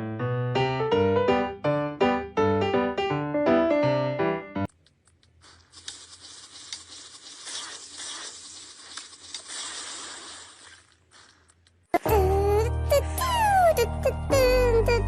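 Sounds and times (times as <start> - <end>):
small scattered clicks: 4.7 - 7.3
crinkling and rustling: 4.7 - 11.9.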